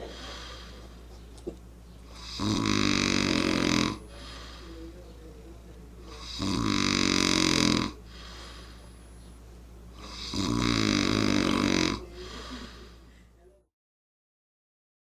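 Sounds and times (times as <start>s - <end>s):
quiet breathing: 0.0s - 1.3s, 1.9s - 6.8s, 7.9s - 13.6s
person snoring: 2.1s - 4.8s, 6.0s - 8.8s, 9.9s - 13.0s.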